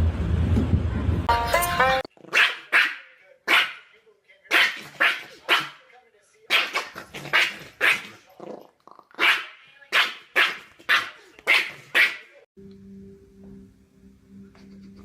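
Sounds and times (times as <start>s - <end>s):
dog barking: 2.3s - 3.9s, 4.5s - 5.8s, 6.5s - 8.2s, 9.2s - 12.4s.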